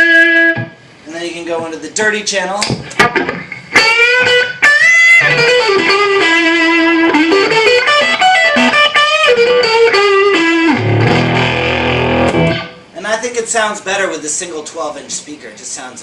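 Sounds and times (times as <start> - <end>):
overdriven electric guitar: 0.0 - 0.8, 2.8 - 12.9.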